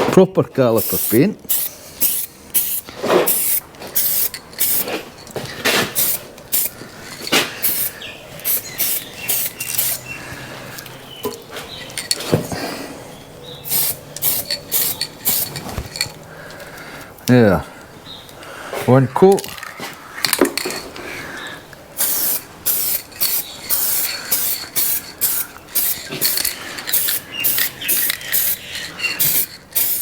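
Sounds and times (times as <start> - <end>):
aerosol spray paint hissing: 0.8 - 4.9, 5.9 - 6.8, 7.6 - 10.1, 13.6 - 15.6, 22.0 - 30.0.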